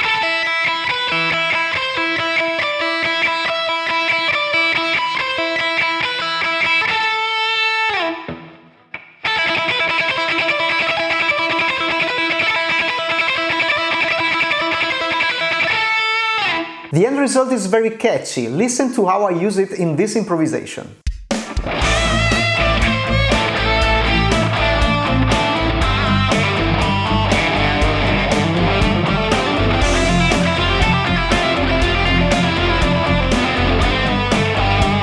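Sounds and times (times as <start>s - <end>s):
electric guitar scale line: 21.7s - 35.0s.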